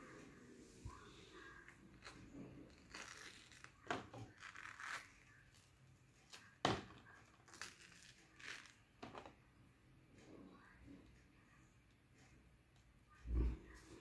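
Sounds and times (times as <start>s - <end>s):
packaging clicks and crinkles: 7.2s - 8.9s.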